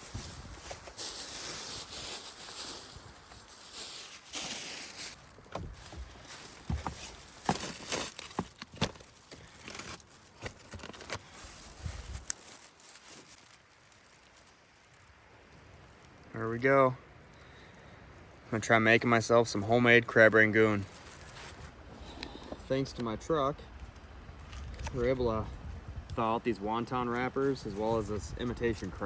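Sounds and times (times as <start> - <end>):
gusty wind on microphone: 0.0 - 0.7, 11.7 - 12.3, 24.1 - 26.7
cooking gear knocks and rustling: 5.4 - 12.4.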